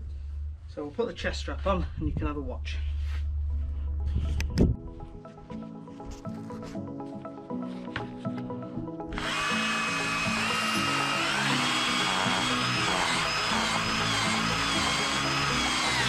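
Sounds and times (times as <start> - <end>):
power drill boring into soil: 9.1 - 16.0.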